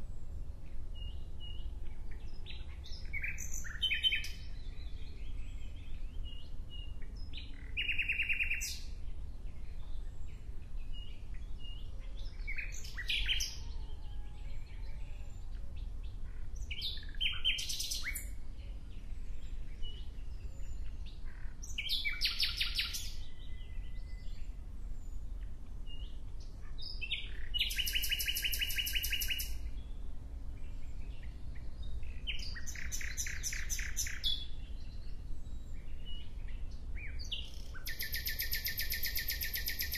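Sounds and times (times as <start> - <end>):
songbird trilling: 19.9 - 24.4, 26.7 - 29.7, 32.2 - 34.5, 37.0 - 39.9.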